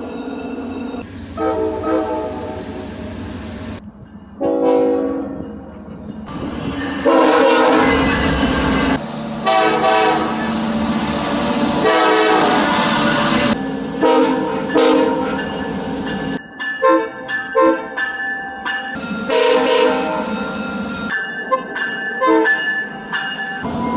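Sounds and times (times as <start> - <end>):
passing train rail noise: 0.0 - 23.9
train horn blasts: 1.4 - 2.6, 4.4 - 5.4, 7.0 - 8.5, 9.4 - 10.5, 11.7 - 15.3, 19.3 - 20.4.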